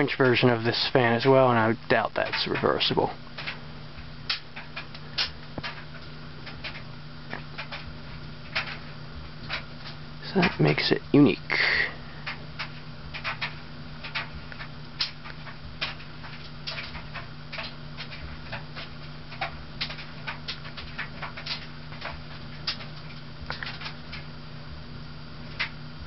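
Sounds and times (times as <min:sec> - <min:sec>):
low electrical hum: 0:00.0 - 0:26.0.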